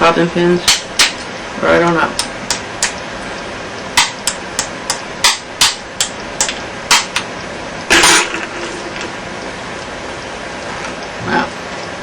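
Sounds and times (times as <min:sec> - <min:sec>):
metal clatter: 0:07.9 - 0:09.1.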